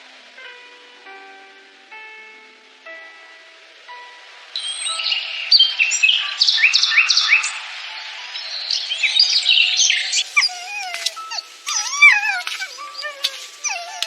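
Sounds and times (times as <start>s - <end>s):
high-pitched animal squeals: 10.2s - 14.0s.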